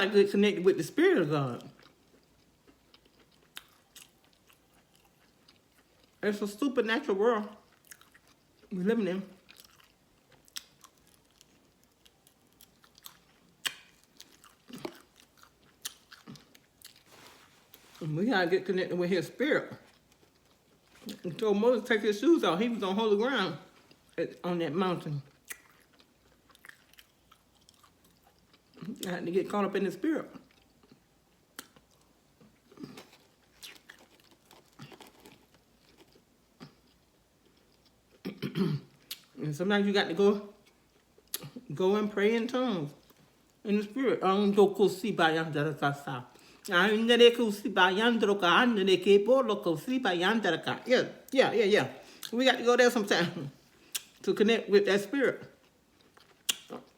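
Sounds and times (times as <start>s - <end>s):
person chewing food: 1.6s - 6.2s, 7.6s - 8.7s, 9.3s - 18.0s, 19.7s - 21.4s, 25.2s - 29.1s, 30.3s - 39.4s, 40.5s - 41.7s, 53.6s - 54.2s, 55.5s - 56.9s
wet mouth clicks and smacks: 13.6s - 14.0s, 56.4s - 56.9s.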